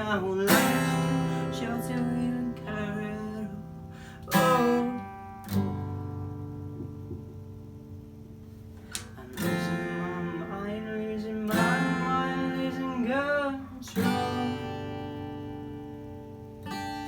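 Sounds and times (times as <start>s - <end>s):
person singing wordlessly: 0.0s - 5.2s, 9.2s - 15.2s
acoustic guitar strumming chords: 0.0s - 17.0s.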